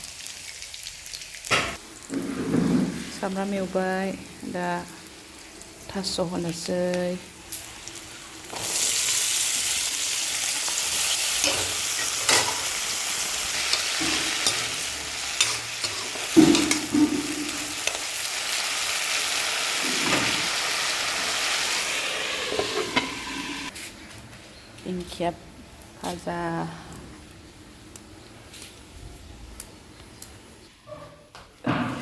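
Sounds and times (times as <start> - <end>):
vegetables sizzling in oil: 0.0 - 2.2, 3.0 - 23.8
spatula scraping a pan: 13.7 - 18.0, 22.4 - 23.7.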